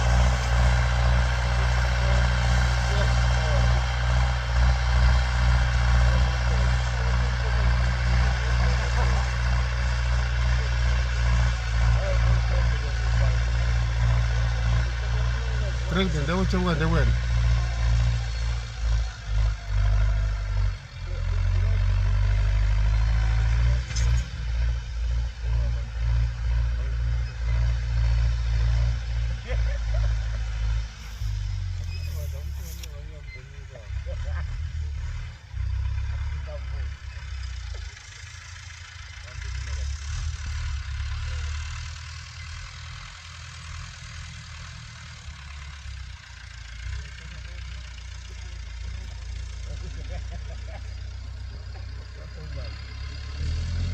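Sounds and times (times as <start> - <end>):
tractor diesel engine rumbling: 0.0 - 53.9.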